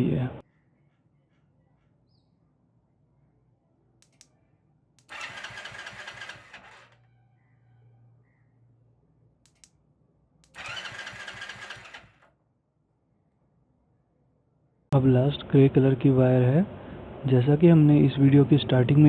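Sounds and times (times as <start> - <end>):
sharp relay click: 4.0 - 4.3, 9.5 - 9.7, 10.4 - 12.3
motorcycle starter cranking: 5.0 - 7.0, 10.4 - 12.3.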